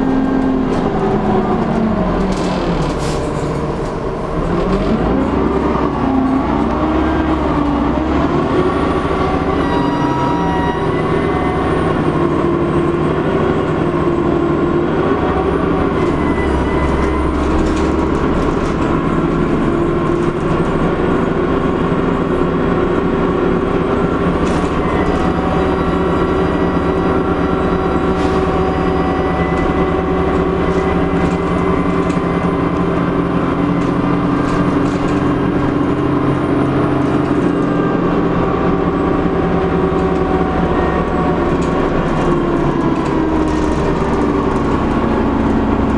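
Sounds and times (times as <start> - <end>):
bus diesel engine running: 0.0 - 45.9.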